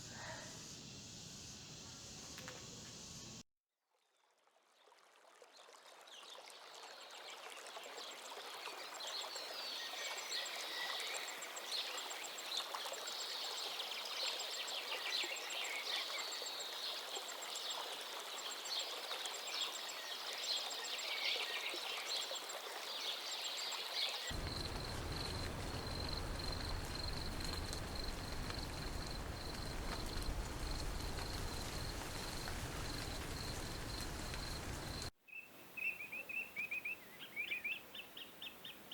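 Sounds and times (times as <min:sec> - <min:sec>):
water-like hiss: 0:00.0 - 0:03.4
birds chirping: 0:24.3 - 0:35.1
low rumble: 0:24.4 - 0:34.8.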